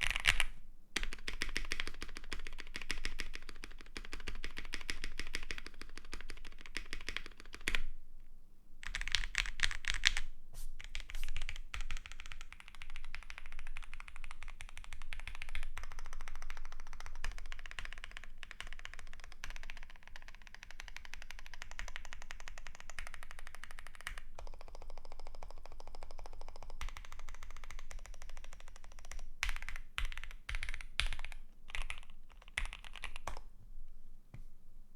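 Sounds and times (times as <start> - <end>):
mechanical keyboard typing: 26.8 - 33.4.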